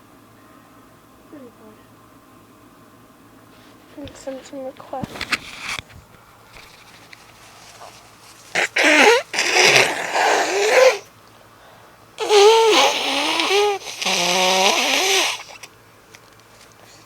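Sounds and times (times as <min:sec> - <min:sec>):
woman sneezing loudly: 0:08.5 - 0:11.1.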